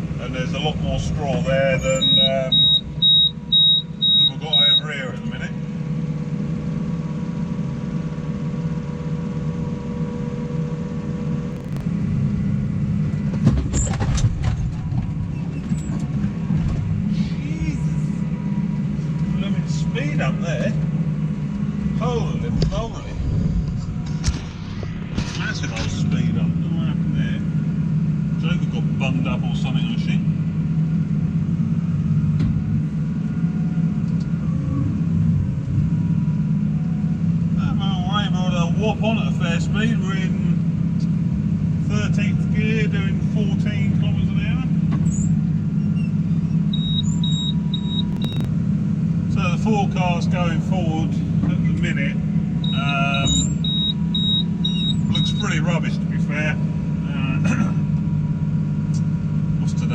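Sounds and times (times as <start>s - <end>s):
thin steady whine: 0.0s - 13.3s, 17.0s - 34.6s, 47.1s - 59.9s
tractor engine running: 0.0s - 34.4s, 44.8s - 59.9s
brief click: 48.1s - 48.5s.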